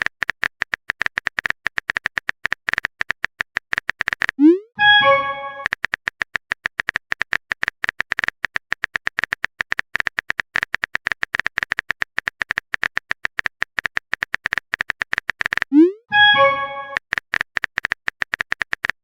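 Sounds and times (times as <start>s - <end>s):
rising message alert tone: 4.4s - 5.7s, 15.7s - 17.0s.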